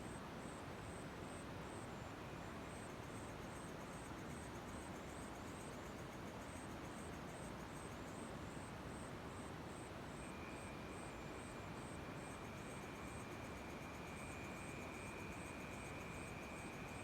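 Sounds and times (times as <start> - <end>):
faint night ambience hiss: 0.0 - 17.0
crickets chirping: 10.2 - 17.0.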